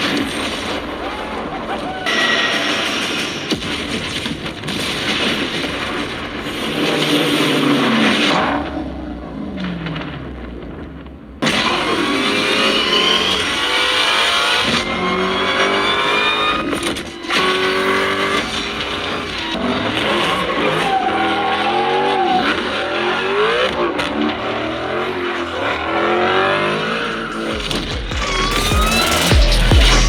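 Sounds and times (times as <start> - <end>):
racing car engines revving: 0.0 - 30.0.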